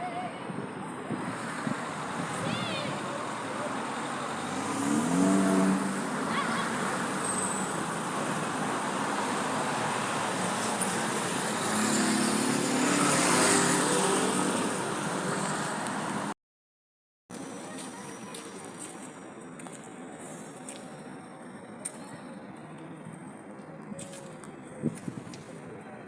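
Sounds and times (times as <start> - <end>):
steady hum of cars: 0.0 - 16.4, 17.3 - 26.0
vehicles passing loudly: 0.0 - 16.4.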